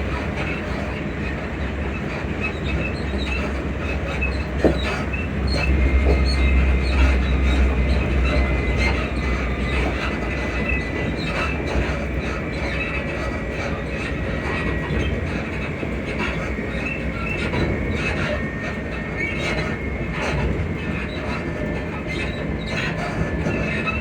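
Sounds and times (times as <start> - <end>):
clicks and knocks from track: 0.0 - 24.0
train rumbling: 0.0 - 24.0
suspension squeaks: 0.2 - 24.0.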